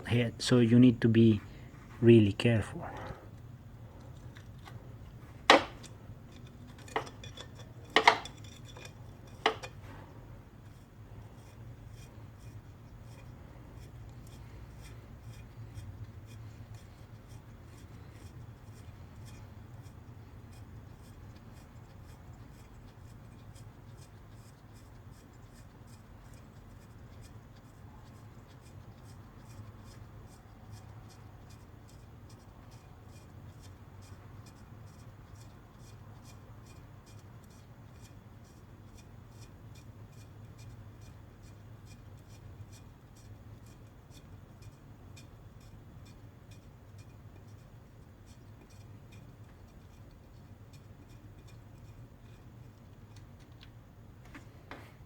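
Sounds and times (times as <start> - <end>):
low steady hum: 0.0 - 55.0
wrench scraping and clicking: 5.5 - 9.8.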